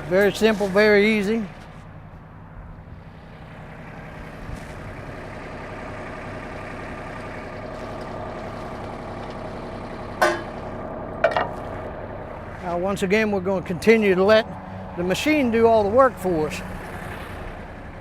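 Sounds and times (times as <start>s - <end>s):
tractor diesel engine running: 0.0s - 18.0s
sharp metal knocks: 10.2s - 10.6s, 11.2s - 11.6s.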